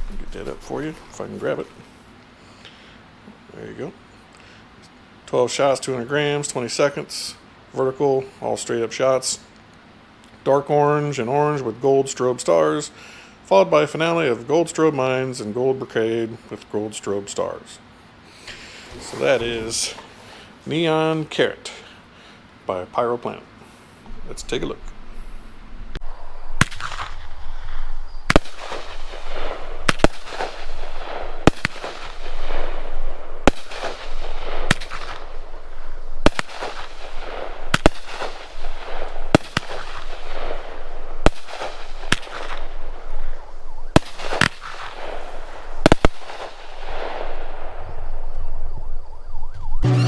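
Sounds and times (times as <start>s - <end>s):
fireworks bangs: 0.0s - 1.9s, 18.5s - 20.3s, 24.1s - 50.0s
crackling hiss of fireworks stars: 0.0s - 7.4s, 17.4s - 22.5s, 23.6s - 48.5s.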